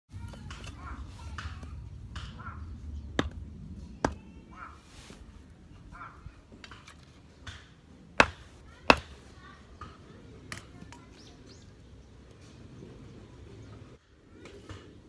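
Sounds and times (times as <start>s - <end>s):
wood being struck: 0.4s - 4.2s, 8.2s - 9.2s.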